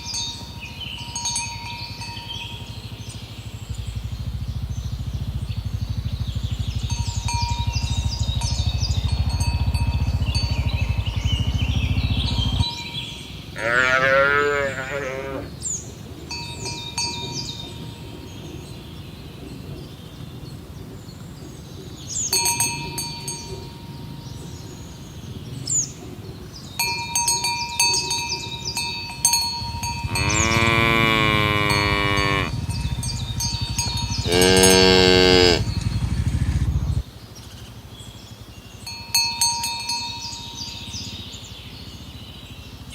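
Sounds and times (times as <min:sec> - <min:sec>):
metallic clinks with ringing: 0:00.0 - 0:03.2, 0:06.9 - 0:11.0, 0:16.2 - 0:18.7, 0:22.2 - 0:24.6, 0:26.8 - 0:30.7, 0:38.8 - 0:41.2
cattle mooing: 0:13.6 - 0:15.5, 0:30.0 - 0:32.8, 0:34.1 - 0:36.8.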